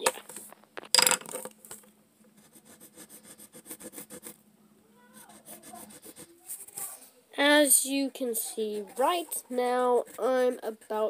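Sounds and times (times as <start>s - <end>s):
colored pencil scratching on paper: 2.4s - 4.4s, 5.1s - 7.1s, 8.4s - 11.0s.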